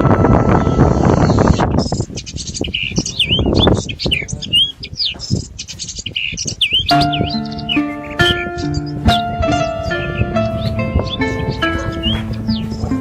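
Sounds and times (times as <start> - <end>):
birds whistling and chattering: 0.0 - 13.0
music: 6.9 - 13.0.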